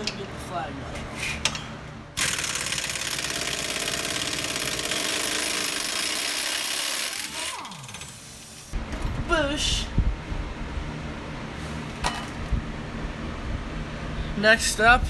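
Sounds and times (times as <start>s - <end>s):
impact wrench rattling: 2.2s - 8.2s
impact wrench spinning down: 2.2s - 8.7s.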